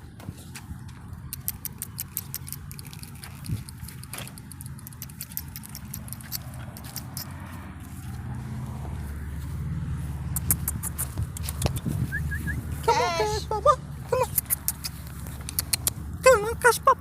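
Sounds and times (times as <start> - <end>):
puppy claws clicking: 1.0 - 8.3, 10.3 - 12.1, 14.1 - 16.9.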